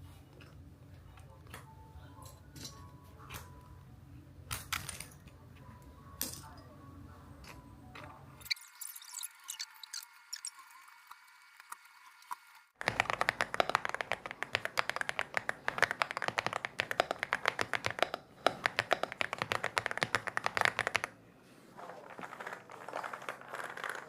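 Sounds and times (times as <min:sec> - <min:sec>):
faint tapping: 0:12.8 - 0:21.1
mechanical keyboard typing: 0:12.8 - 0:21.2, 0:22.2 - 0:24.0.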